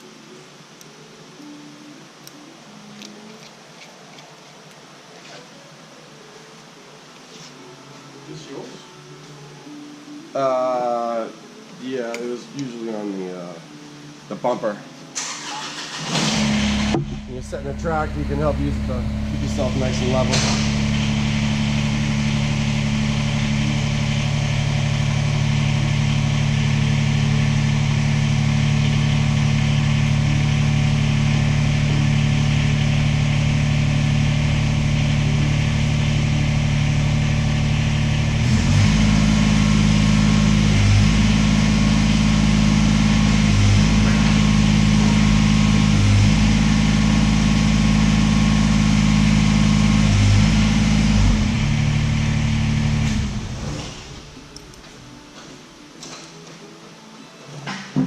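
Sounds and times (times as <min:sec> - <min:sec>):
tractor engine running: 0:15.5 - 0:54.7.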